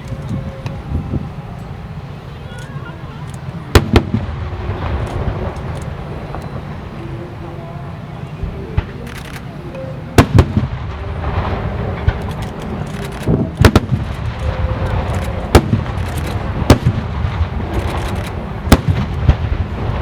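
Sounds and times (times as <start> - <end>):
firework crackling: 0.0 - 20.0
firework booms: 3.7 - 7.0, 8.4 - 9.1, 10.1 - 20.0.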